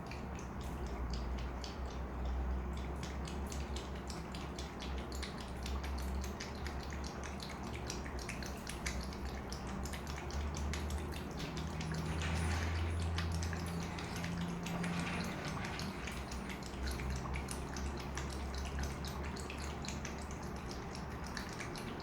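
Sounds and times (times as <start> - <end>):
cat lapping water: 0.0 - 22.0.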